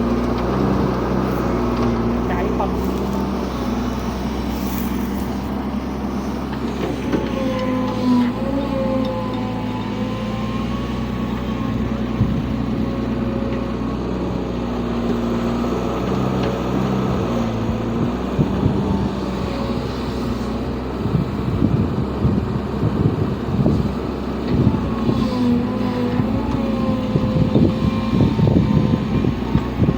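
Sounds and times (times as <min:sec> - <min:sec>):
excavator diesel engine humming: 0:00.0 - 0:29.9.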